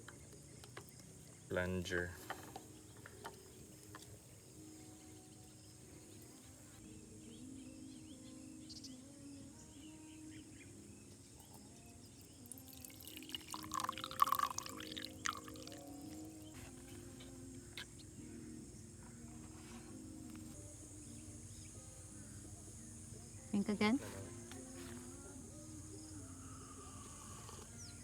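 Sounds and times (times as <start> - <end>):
liquid pouring and splashing: 12.4 - 16.3.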